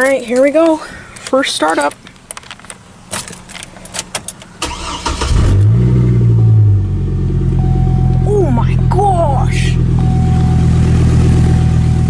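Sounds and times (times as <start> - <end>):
starter motor cranking: 4.6 - 5.6
truck engine idling: 6.3 - 12.0.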